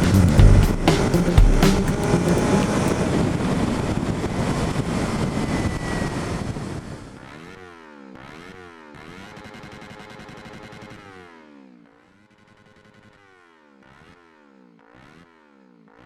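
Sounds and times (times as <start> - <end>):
motorcycle running: 0.0 - 3.6.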